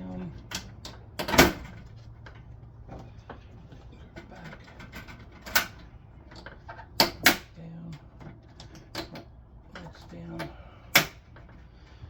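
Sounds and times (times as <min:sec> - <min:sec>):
latch clicking shut: 0:00.5 - 0:01.8.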